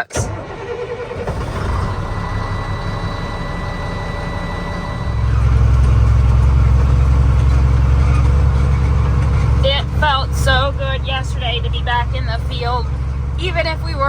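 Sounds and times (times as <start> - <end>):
truck diesel engine: 0.0 - 14.0
thin high tone: 1.9 - 6.6.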